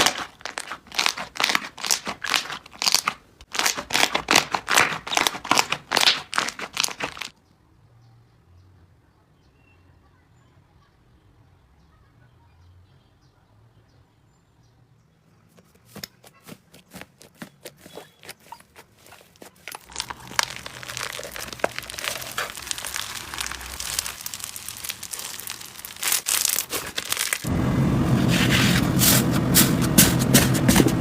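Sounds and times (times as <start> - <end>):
slime crackling and popping: 0.0 - 7.3, 19.0 - 27.5.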